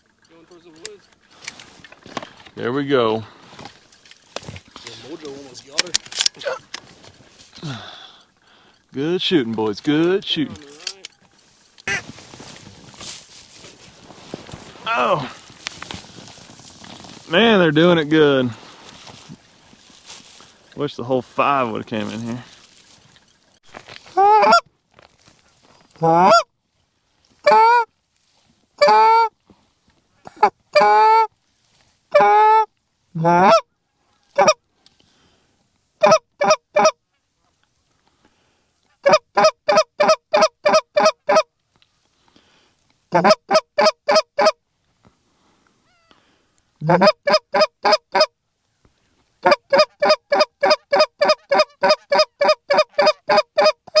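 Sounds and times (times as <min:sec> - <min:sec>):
goose honking and clucking: 0:11.8 - 0:12.2, 0:24.2 - 0:24.7, 0:26.0 - 0:26.5, 0:27.4 - 0:27.9, 0:28.8 - 0:29.3, 0:30.3 - 0:31.3, 0:32.1 - 0:34.6, 0:36.0 - 0:37.0, 0:39.0 - 0:41.5, 0:43.1 - 0:44.6, 0:46.8 - 0:48.4, 0:49.4 - 0:54.0.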